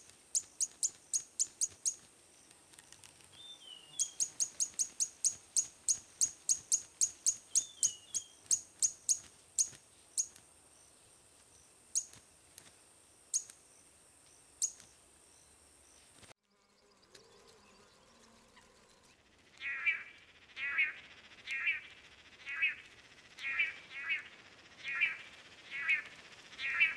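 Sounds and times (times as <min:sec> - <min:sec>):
high insect-like tone: 0:00.0 - 0:03.0, 0:03.9 - 0:16.0, 0:18.9 - 0:26.9
bird chirping: 0:00.3 - 0:02.6, 0:03.3 - 0:10.9, 0:12.0 - 0:12.2, 0:13.3 - 0:13.7, 0:14.3 - 0:26.9
low warbling bird calls: 0:19.6 - 0:26.9.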